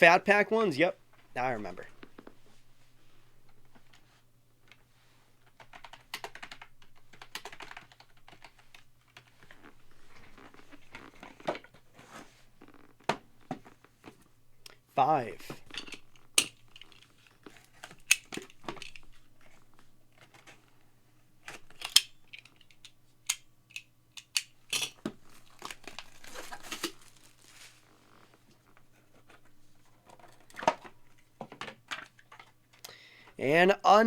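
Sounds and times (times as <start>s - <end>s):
packaging crinkling and tearing: 25.2s - 28.3s.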